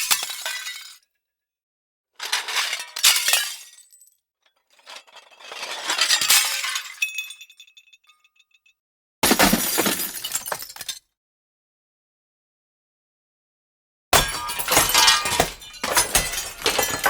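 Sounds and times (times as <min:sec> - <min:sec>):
glass shattering: 0:02.6 - 0:03.9, 0:04.9 - 0:08.2, 0:09.2 - 0:11.0, 0:14.2 - 0:17.0
glass shards tinkling: 0:04.9 - 0:08.6, 0:14.2 - 0:17.0
glass crashing: 0:09.2 - 0:10.9, 0:14.2 - 0:17.0.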